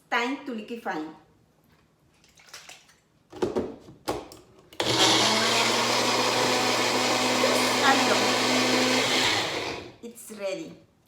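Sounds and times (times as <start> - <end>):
blender motor running: 4.8 - 10.0.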